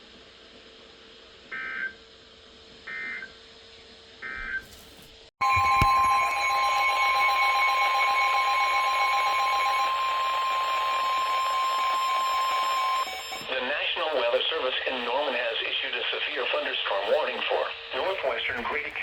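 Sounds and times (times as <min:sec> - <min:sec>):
digital data bursts: 0:05.4 - 0:13.5
two-tone attention signal: 0:05.4 - 0:13.7.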